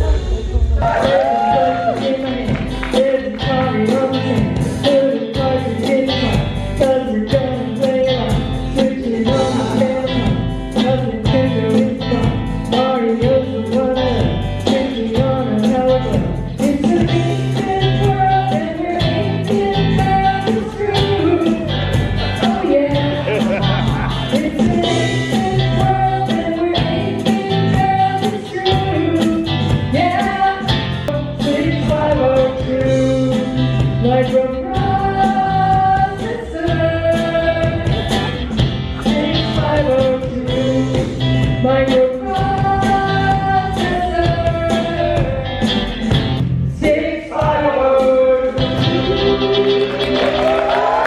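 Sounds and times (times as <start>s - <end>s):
person singing: 0.0s - 46.1s, 46.8s - 51.0s
live band playing: 0.0s - 51.0s.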